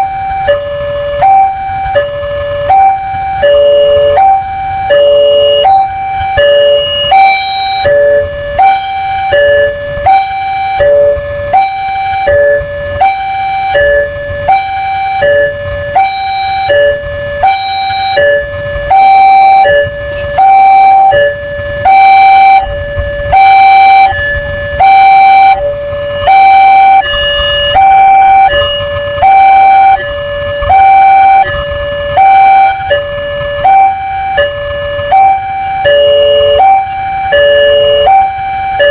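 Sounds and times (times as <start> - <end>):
two-tone crossing alarm: 0.0 - 38.9
low rumble: 18.5 - 35.2.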